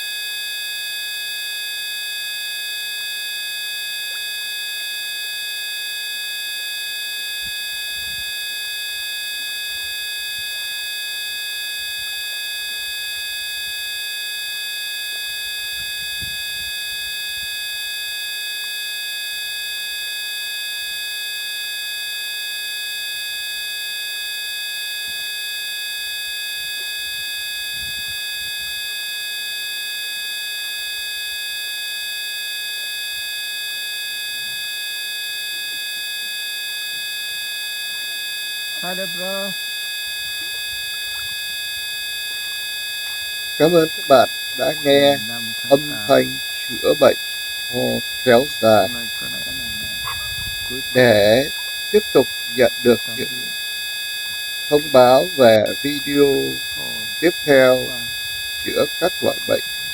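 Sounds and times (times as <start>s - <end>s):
synthesized electronic tone drone: 42.4s - 53.6s, 54.3s - 58.1s.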